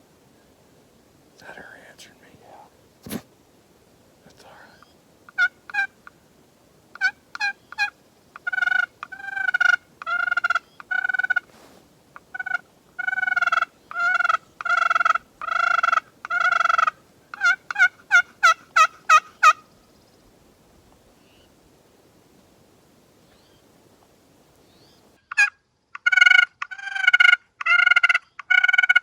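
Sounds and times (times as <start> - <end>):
turkey hen yelping: 5.3 - 6.1, 7.0 - 11.5, 12.2 - 19.7, 25.3 - 29.0.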